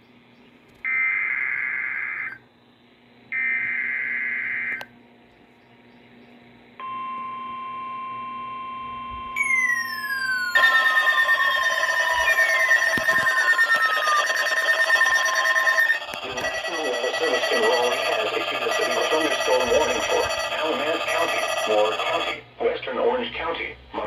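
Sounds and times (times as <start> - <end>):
steady warning alarm tone: 3.3 - 4.9, 6.8 - 22.5
alarm with falling sweeps: 6.8 - 22.4
digital data burst squawks: 9.4 - 22.4.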